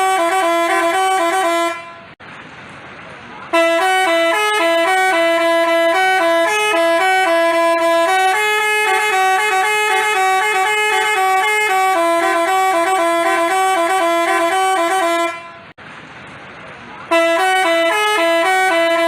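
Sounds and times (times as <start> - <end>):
bus horn playing melody: 0.0 - 2.2, 3.5 - 15.8, 17.1 - 19.0.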